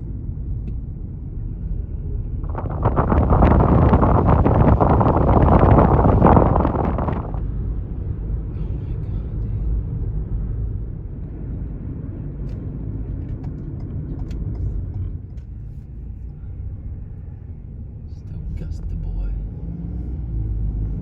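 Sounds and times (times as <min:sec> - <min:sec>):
car driving rumble from inside: 0:00.0 - 0:21.0
wind rush on microphone: 0:00.9 - 0:08.8.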